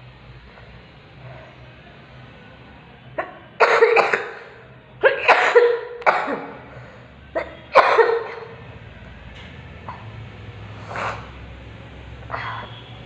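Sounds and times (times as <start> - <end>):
person coughing hard: 3.2 - 6.7, 7.4 - 8.6, 12.3 - 12.8.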